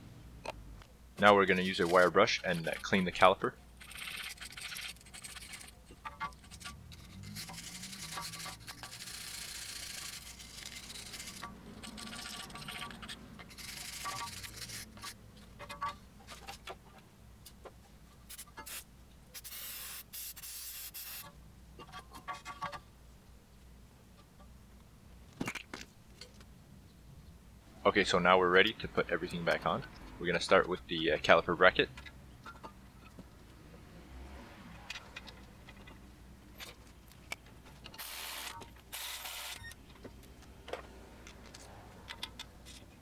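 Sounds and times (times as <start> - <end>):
wire brush scrubbing metal: 1.2 - 15.2.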